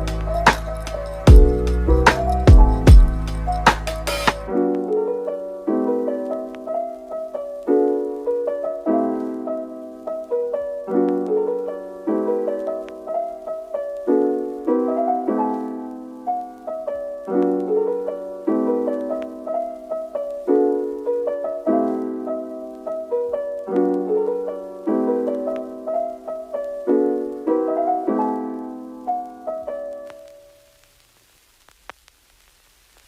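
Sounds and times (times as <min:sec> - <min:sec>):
slow gentle piano piece: 0:00.0 - 0:31.0.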